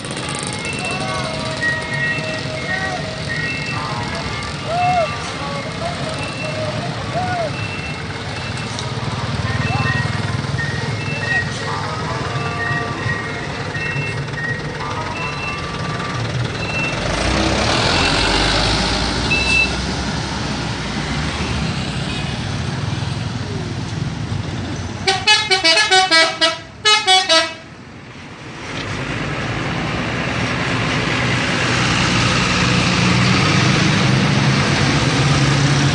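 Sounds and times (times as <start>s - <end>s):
bus engine: 0.0s - 35.9s
musical air horn: 25.1s - 27.6s.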